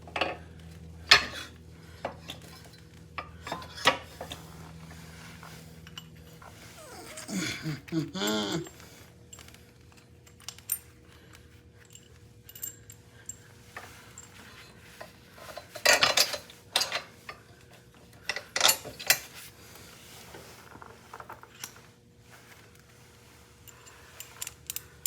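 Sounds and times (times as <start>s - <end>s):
metal bolts and tools clinking: 15.4s - 17.1s.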